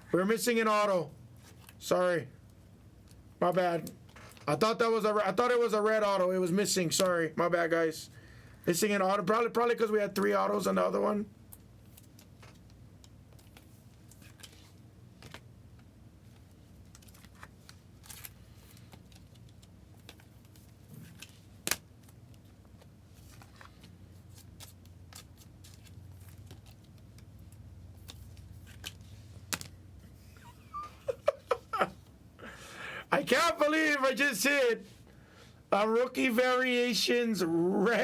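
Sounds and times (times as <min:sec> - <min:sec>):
cards and packaging rustling: 0:16.2 - 0:30.3.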